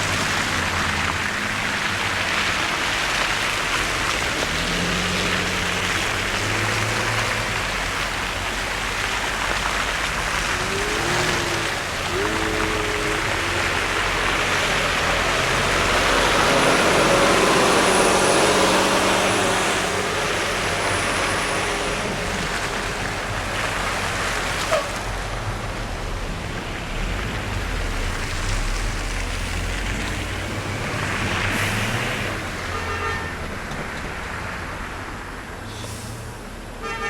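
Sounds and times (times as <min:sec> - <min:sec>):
tyres hissing through slush: 0:00.0 - 0:25.4, 0:27.0 - 0:33.4.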